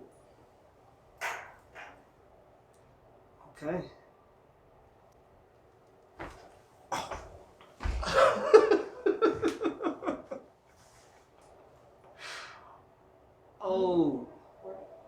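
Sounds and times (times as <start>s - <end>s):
person laughing: 8.0s - 10.4s
breathy exhale: 12.2s - 12.8s.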